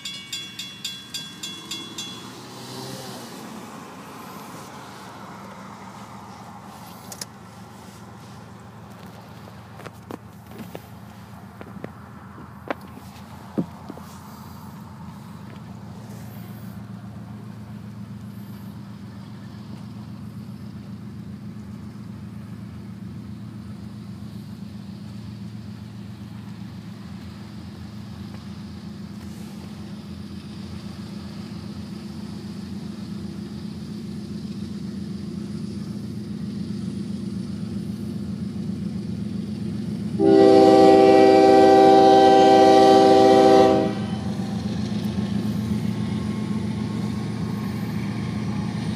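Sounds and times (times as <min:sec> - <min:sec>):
diesel locomotive rumbling: 0:00.0 - 0:48.9
train air horn blast: 0:40.2 - 0:44.6.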